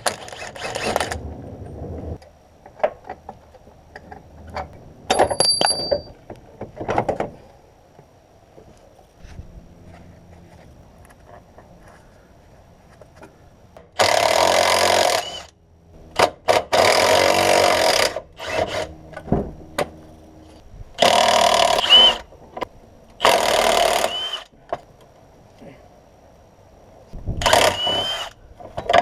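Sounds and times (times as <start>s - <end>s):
power drill running: 0.0s - 1.2s, 14.0s - 15.5s, 16.7s - 18.9s, 21.0s - 22.2s, 23.2s - 24.5s, 27.4s - 28.4s.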